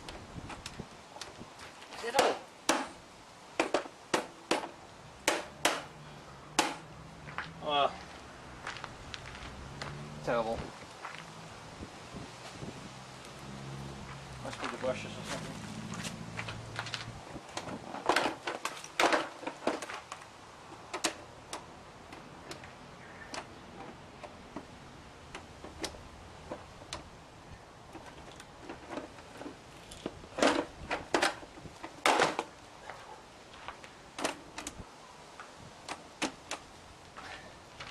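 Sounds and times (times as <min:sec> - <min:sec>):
hard parts clicking and knocking: 0:16.5 - 0:27.1, 0:27.9 - 0:32.5.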